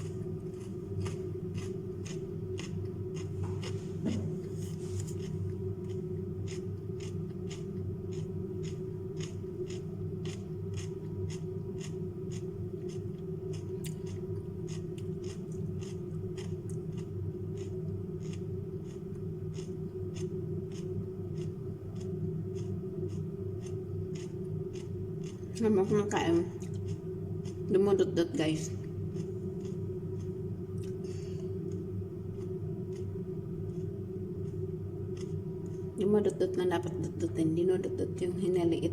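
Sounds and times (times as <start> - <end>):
crunching of raw vegetables: 0.0 - 11.1, 11.8 - 22.7
steady low hum: 0.0 - 38.9.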